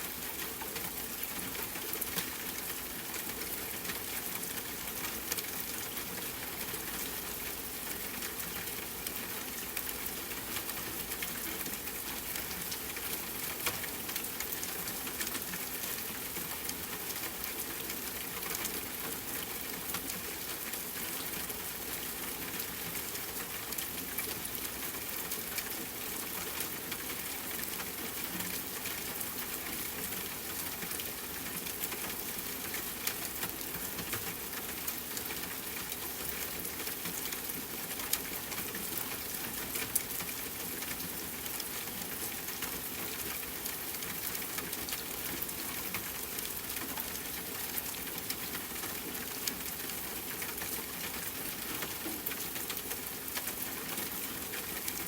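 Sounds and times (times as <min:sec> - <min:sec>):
steady rainfall: 0:00.0 - 0:55.0.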